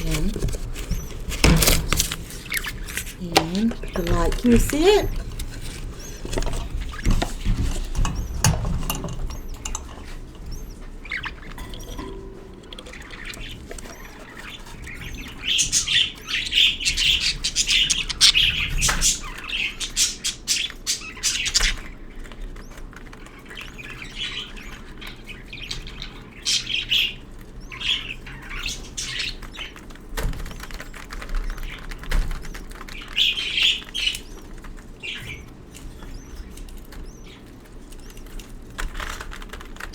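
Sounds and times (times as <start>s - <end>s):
budgerigar chirping and squawking: 0.0s - 39.2s.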